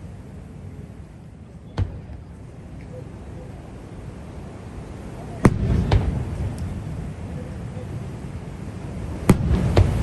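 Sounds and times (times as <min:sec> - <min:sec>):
steady low rumble: 0:00.0 - 0:10.0
firework shell boom: 0:09.3 - 0:10.0.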